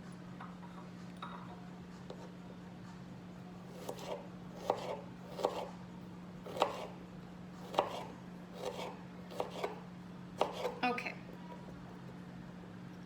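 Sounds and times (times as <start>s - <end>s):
knife chopping on cutting board: 3.7s - 5.7s, 6.4s - 7.0s, 7.6s - 9.8s, 10.4s - 10.8s.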